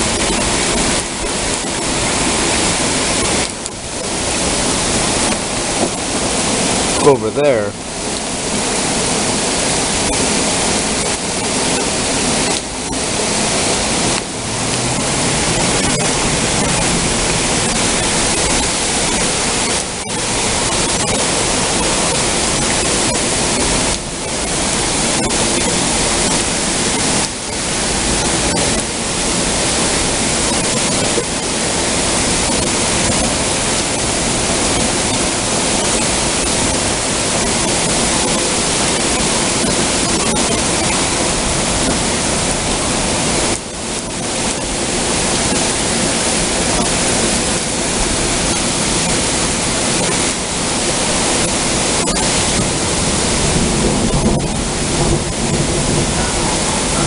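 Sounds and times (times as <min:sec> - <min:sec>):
heavy rain pouring: 0:00.0 - 0:57.0.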